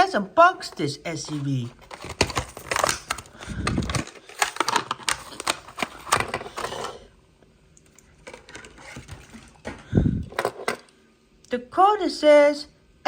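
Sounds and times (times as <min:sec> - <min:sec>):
plastic blister pack clicking: 0:01.8 - 0:06.6.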